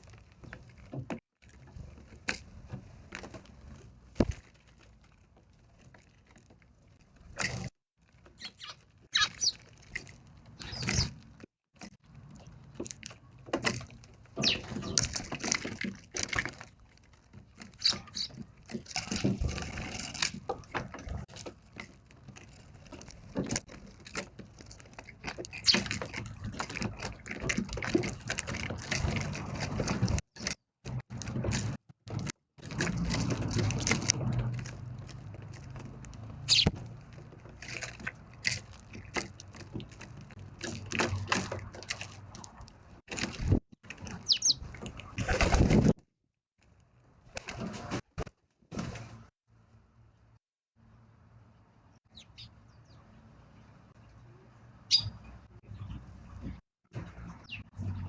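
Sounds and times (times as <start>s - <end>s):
sparrows chirping: 8.4s - 9.7s, 10.6s - 11.2s, 14.4s - 15.0s, 17.8s - 18.4s, 36.4s - 36.7s, 44.2s - 44.6s, 52.0s - 54.2s, 54.8s - 56.4s, 57.3s - 57.7s.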